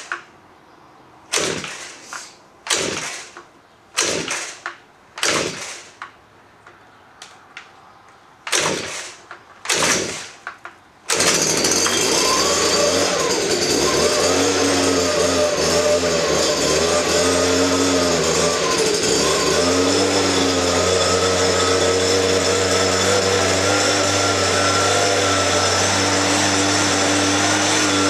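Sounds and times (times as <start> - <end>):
leaf blower engine running: 11.1 - 28.0
starter cord rasping whir: 11.1 - 28.0.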